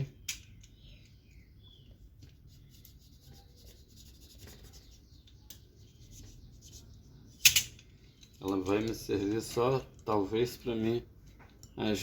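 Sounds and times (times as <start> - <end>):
hands rubbing and scratching: 2.2 - 7.2.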